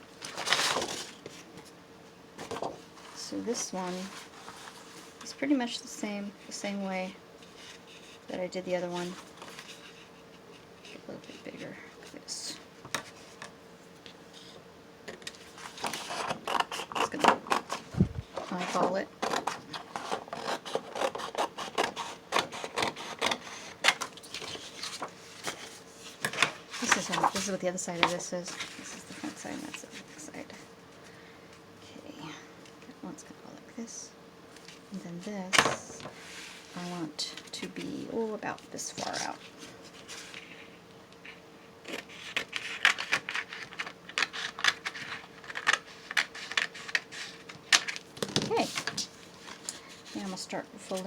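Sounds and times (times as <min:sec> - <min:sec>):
paper rustling and crinkling: 0:00.2 - 0:01.8, 0:02.4 - 0:05.3, 0:08.9 - 0:10.2, 0:23.2 - 0:30.3, 0:38.9 - 0:51.0.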